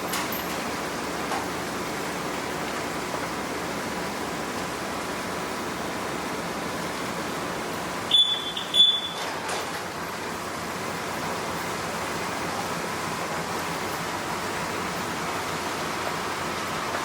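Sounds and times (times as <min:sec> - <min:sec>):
high electronic beeps: 0:08.1 - 0:09.2.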